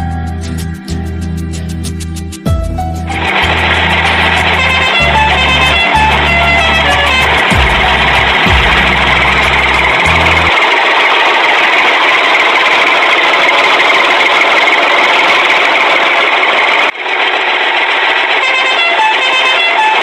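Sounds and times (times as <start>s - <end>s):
plucked guitar tune: 0.0s - 10.5s
dumper truck engine: 3.1s - 20.0s.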